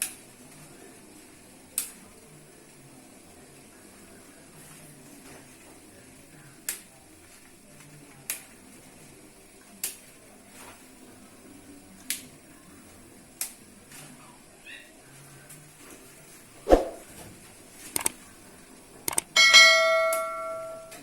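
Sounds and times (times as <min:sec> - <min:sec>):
sharp short clicks: 0:17.9 - 0:18.2, 0:19.1 - 0:19.3.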